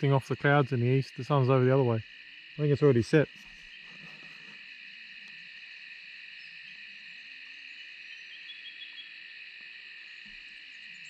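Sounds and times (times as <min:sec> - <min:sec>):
insects shrilling: 0:00.0 - 0:05.3.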